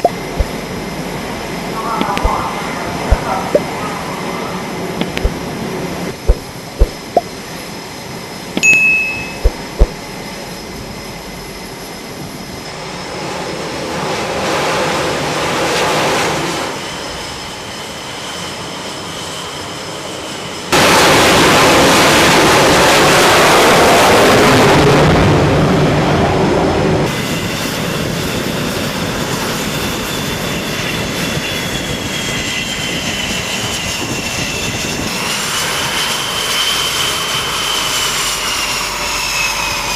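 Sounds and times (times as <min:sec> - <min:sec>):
jet engine noise: 0:00.0 - 0:39.9
sharp knocks: 0:05.0 - 0:05.4, 0:06.2 - 0:07.3, 0:09.3 - 0:10.0.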